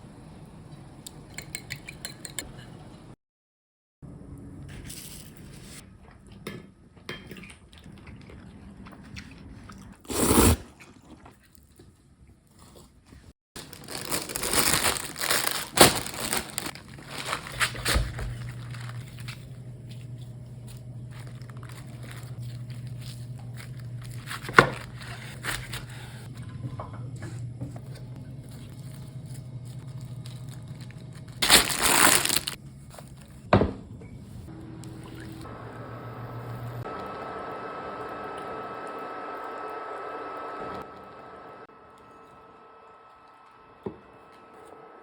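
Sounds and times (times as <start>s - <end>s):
crinkling and rustling: 12.6s - 25.9s, 27.8s - 33.4s
steady low hum: 18.1s - 31.6s.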